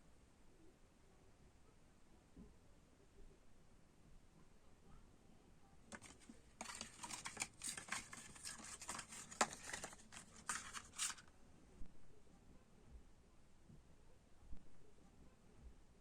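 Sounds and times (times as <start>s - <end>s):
packaging crinkling: 5.9s - 11.2s.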